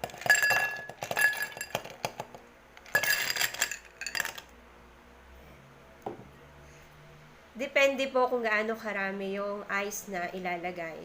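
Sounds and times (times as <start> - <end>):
ice cubes clinking in glass: 0.0 - 2.2, 2.8 - 4.5
glass ringing: 0.2 - 1.8.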